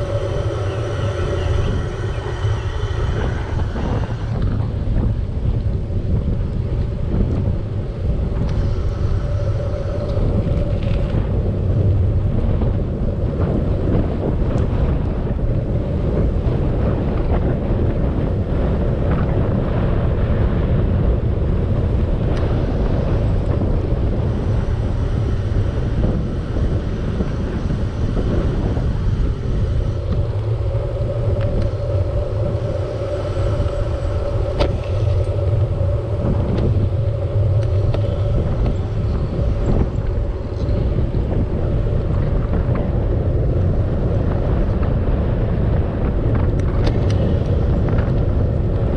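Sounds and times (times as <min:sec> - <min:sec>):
steady mid-pitched tone: 0:00.0 - 0:13.2, 0:23.0 - 0:43.0
wind rumbling on microphone: 0:00.0 - 0:48.9.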